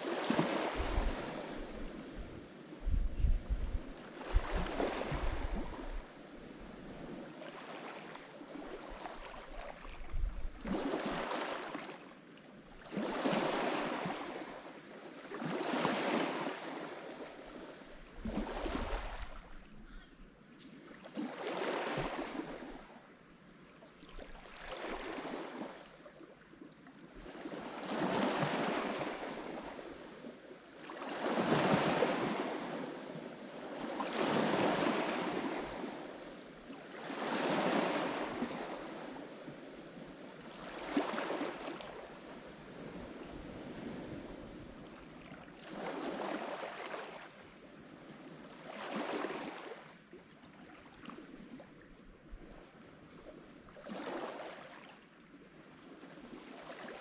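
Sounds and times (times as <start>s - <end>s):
waves breaking on shore: 0.0s - 20.0s, 20.6s - 23.1s, 23.9s - 26.4s, 27.0s - 57.0s.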